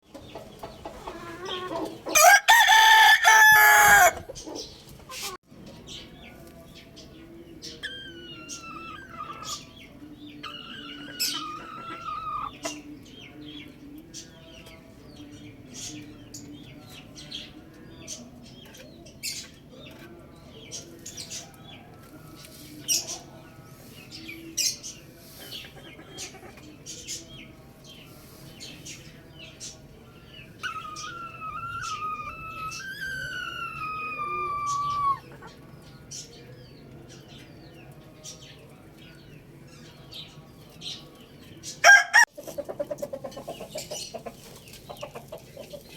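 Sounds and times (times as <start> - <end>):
birds chirping: 0.0 - 45.9
chicken clucking: 0.0 - 45.9
rooster crowing: 2.2 - 4.3, 41.8 - 42.3.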